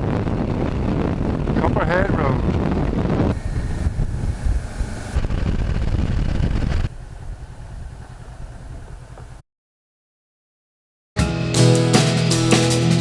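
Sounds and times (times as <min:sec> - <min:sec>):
wind rush: 0:00.0 - 0:08.8.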